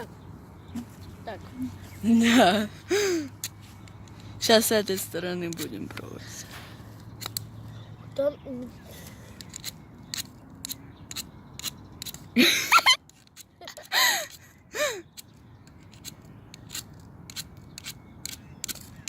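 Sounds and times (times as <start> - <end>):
knife scraping fire-starter rod: 15.1 - 19.0.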